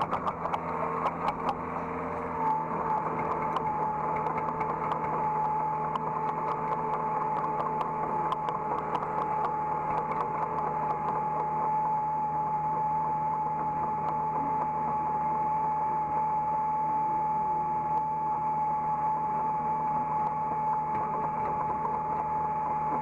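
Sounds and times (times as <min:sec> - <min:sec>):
excavator engine and hydraulics whining: 0:00.0 - 0:23.0
light ticks: 0:05.9 - 0:11.2.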